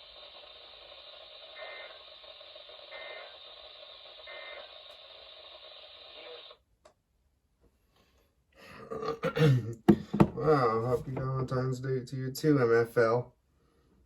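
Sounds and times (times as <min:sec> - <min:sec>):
electronic data bursts: 0:00.0 - 0:06.6
radio hiss: 0:00.0 - 0:06.6.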